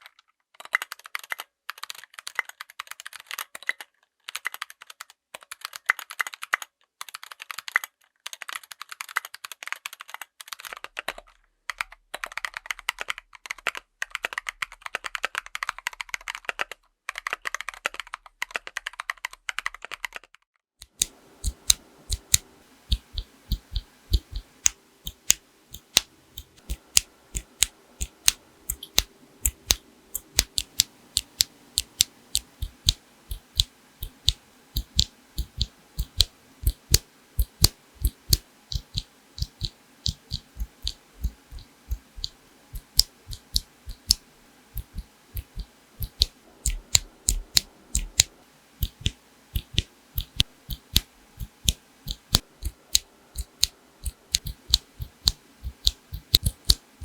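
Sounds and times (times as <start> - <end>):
mechanical keyboard typing: 0.6 - 44.2, 44.8 - 57.0.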